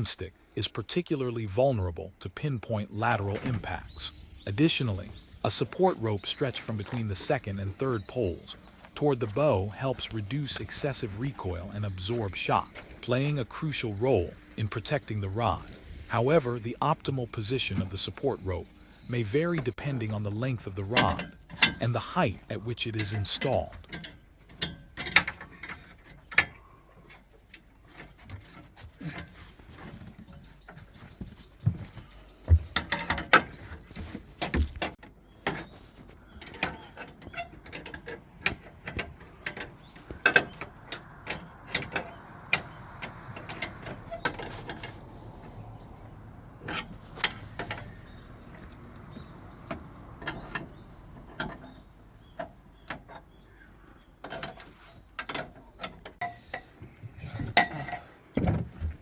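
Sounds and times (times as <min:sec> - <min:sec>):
clicks and knocks on metal: 0:19.6 - 0:59.0.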